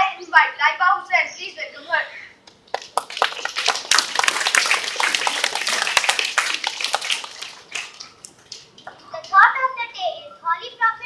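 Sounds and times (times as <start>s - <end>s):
children clapping: 2.7s - 9.0s.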